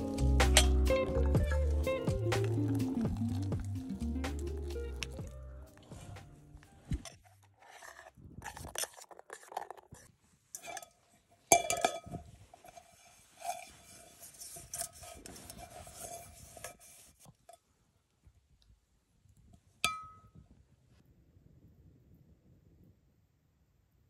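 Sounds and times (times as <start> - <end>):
metal items scraping and clinking: 0.0 - 17.2.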